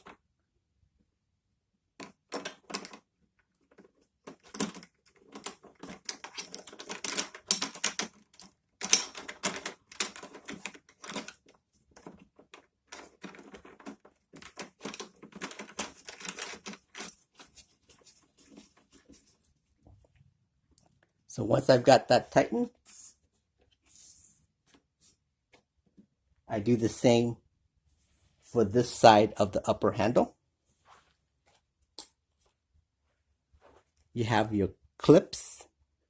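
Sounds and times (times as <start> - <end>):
handle fastener clicking and rattling: 2.0 - 18.7.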